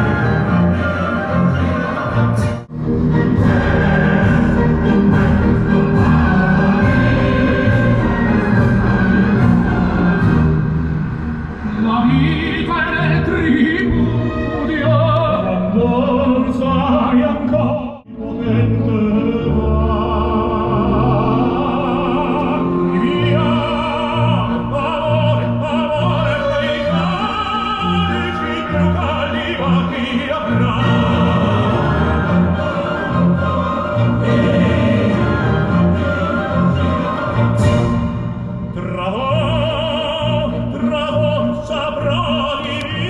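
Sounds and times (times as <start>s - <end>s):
opera singing with orchestra: 0.0s - 43.0s.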